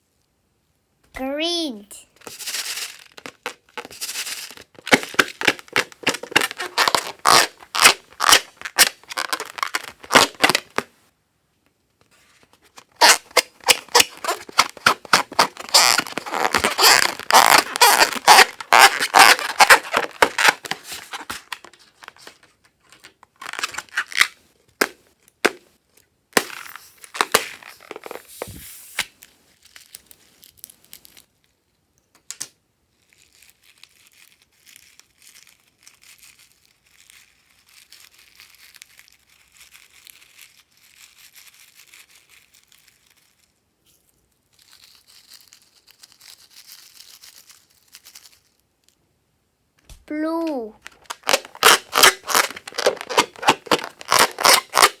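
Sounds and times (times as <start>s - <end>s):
slime squeezed by hand: 13.0s - 21.5s, 50.0s - 55.0s.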